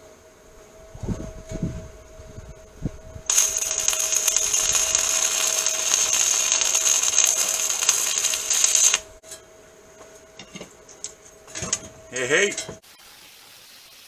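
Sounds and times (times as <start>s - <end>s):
angle grinder grinding steel: 3.3s - 9.2s.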